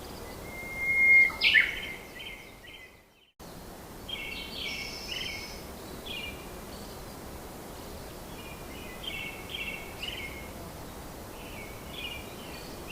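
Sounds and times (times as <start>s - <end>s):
birds chirping: 0.0s - 3.3s
steady background hiss: 0.0s - 12.9s.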